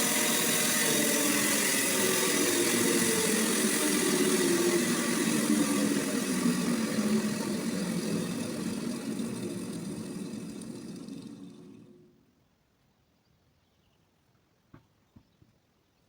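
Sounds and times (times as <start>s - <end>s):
sawmill engine running: 0.0s - 12.2s.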